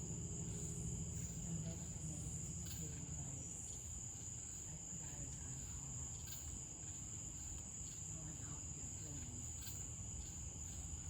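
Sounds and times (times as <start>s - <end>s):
crickets trilling: 0.0s - 11.0s.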